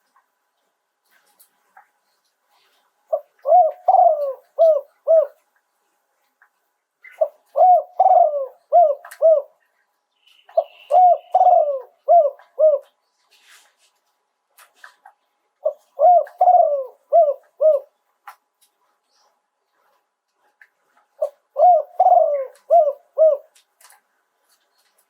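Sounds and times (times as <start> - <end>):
dove cooing: 3.1 - 5.4, 7.0 - 9.6, 10.5 - 13.0, 15.6 - 18.0, 21.2 - 23.6.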